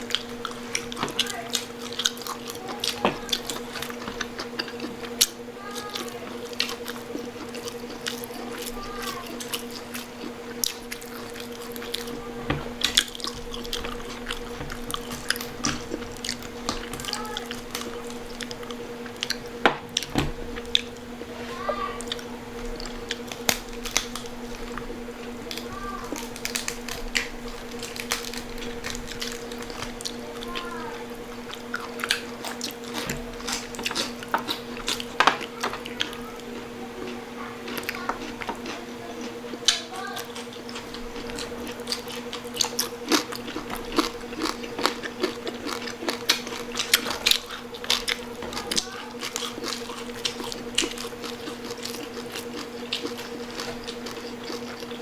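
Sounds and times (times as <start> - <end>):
steady hum: 0.0 - 55.0
wet chewing: 0.0 - 55.0
crunchy bites: 37.7 - 55.0.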